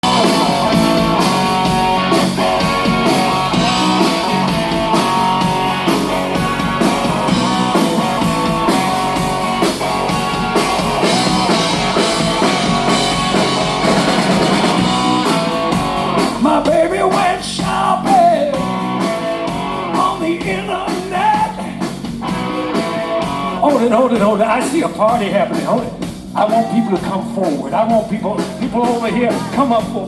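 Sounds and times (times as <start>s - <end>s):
electric guitar: 0.0s - 23.9s
drum kit beat: 0.0s - 30.0s.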